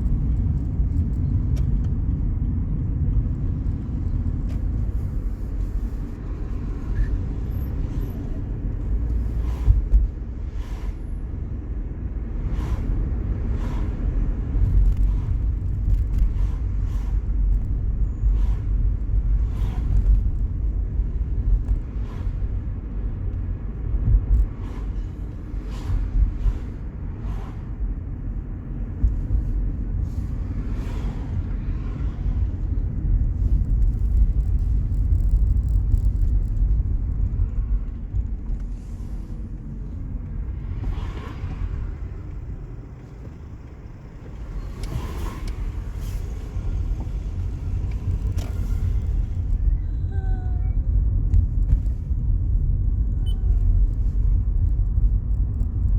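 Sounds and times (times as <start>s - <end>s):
car rolling with low rumble: 0.0s - 55.9s
faint wheel squeal: 40.5s - 50.9s.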